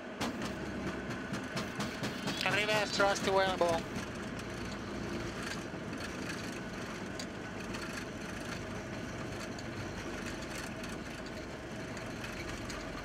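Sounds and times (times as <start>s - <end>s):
jet engines in reverse thrust: 0.0s - 13.0s
wheels rolling on runway: 0.0s - 13.0s.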